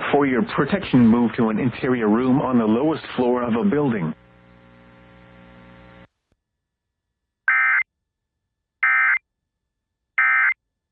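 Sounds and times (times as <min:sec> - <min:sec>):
faint hum: 0:00.2 - 0:06.2.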